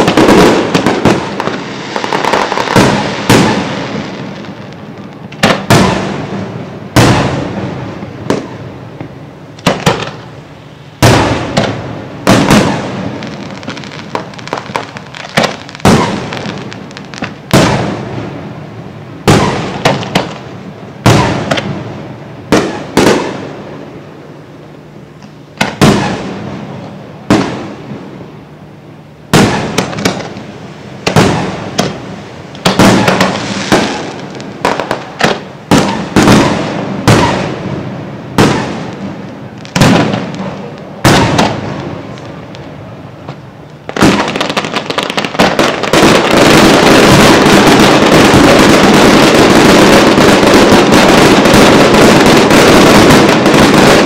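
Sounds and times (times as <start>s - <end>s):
crackling firework bursts: 0.0s - 24.5s, 25.1s - 28.5s, 29.2s - 54.0s
fireworks shells bursting: 32.6s - 37.6s.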